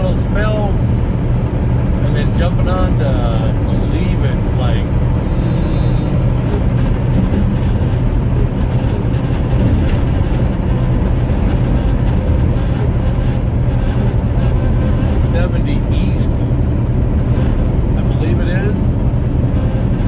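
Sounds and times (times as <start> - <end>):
truck cab road rumble: 0.0 - 20.0.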